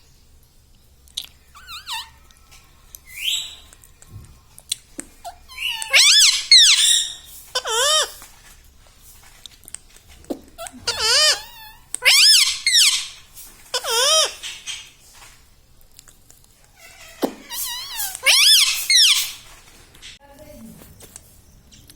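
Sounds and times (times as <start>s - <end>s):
parrot squawking: 1.5s - 2.4s, 3.0s - 3.7s, 5.2s - 8.3s, 10.6s - 15.0s, 16.8s - 19.5s.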